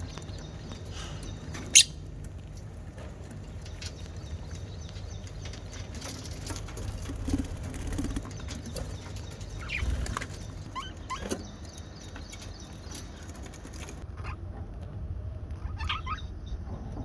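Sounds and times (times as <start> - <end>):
budgerigar chirping: 1.7 - 2.0, 15.7 - 16.4.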